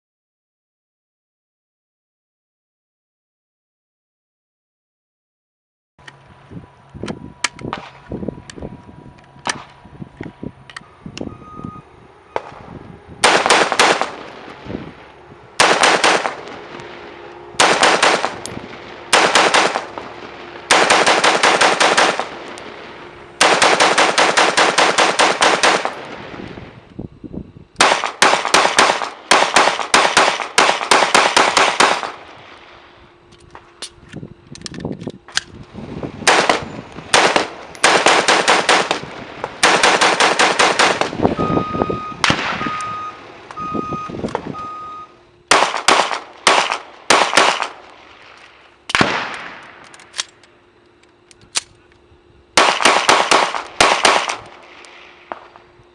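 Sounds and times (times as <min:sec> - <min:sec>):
automatic rifle firing bursts: 0:13.2 - 0:14.3, 0:15.6 - 0:16.6, 0:17.6 - 0:18.4, 0:19.1 - 0:20.0, 0:20.7 - 0:22.4, 0:23.4 - 0:26.0, 0:27.8 - 0:32.3, 0:36.3 - 0:41.2, 0:45.5 - 0:47.9, 0:52.6 - 0:55.4.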